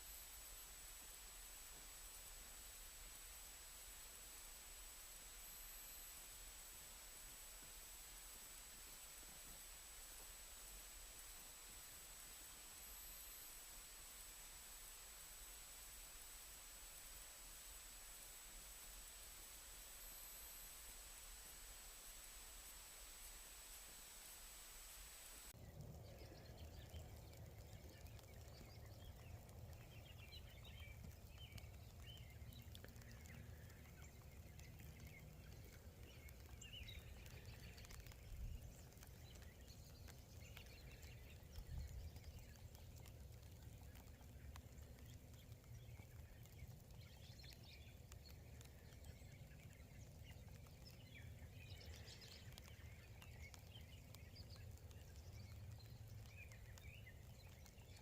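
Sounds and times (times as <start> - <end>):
small birds chirping: 0.0 - 58.0
low outdoor rumble: 25.4 - 58.0.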